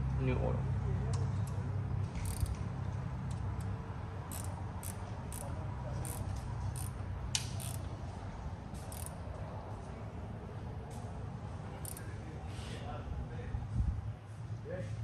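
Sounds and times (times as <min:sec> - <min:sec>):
ratchet wrench clicking: 0:02.2 - 0:02.6, 0:03.3 - 0:07.9, 0:08.8 - 0:09.2, 0:11.8 - 0:12.1.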